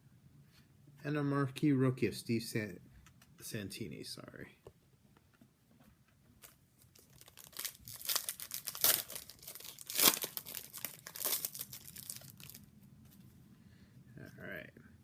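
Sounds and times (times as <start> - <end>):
wrapper crinkling and tearing: 6.4 - 12.7.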